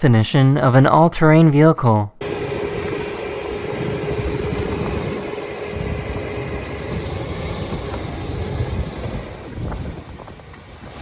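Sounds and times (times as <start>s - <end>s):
all-terrain vehicle engine running: 2.2s - 11.0s
steady engine tone: 2.2s - 11.0s.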